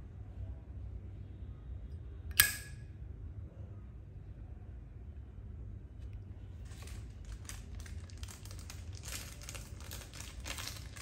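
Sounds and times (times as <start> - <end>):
wrapping crinkling and rustling: 6.6 - 11.0.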